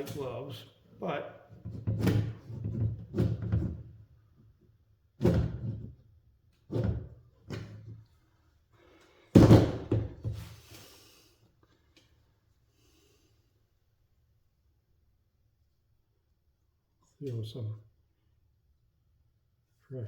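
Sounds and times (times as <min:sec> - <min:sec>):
knocks and thuds on a workbench: 0:01.6 - 0:03.9, 0:05.2 - 0:06.0, 0:09.3 - 0:10.5.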